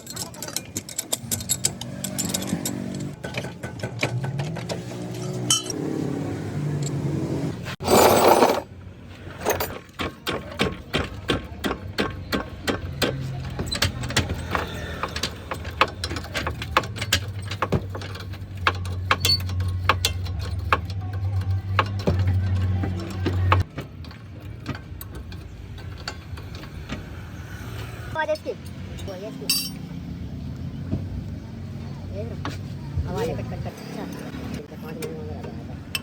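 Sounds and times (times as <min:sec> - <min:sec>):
sharp irregular clicks and knocks: 0:00.0 - 0:04.8, 0:09.7 - 0:27.2.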